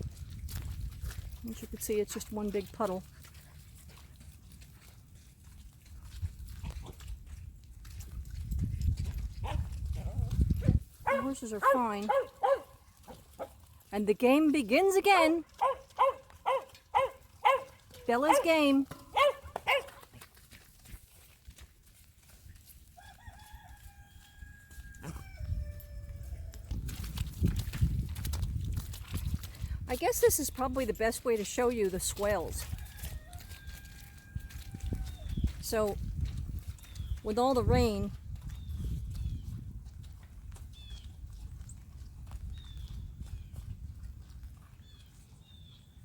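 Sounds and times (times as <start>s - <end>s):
wind buffeting microphone: 0.0s - 2.8s, 5.5s - 11.4s, 25.0s - 46.0s
distant rooster crowing: 23.0s - 26.6s, 32.8s - 35.1s.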